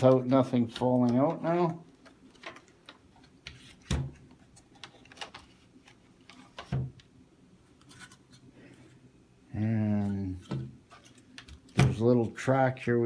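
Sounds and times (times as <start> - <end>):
plastic parts clicking and tapping: 0.0 - 7.1, 10.4 - 12.0.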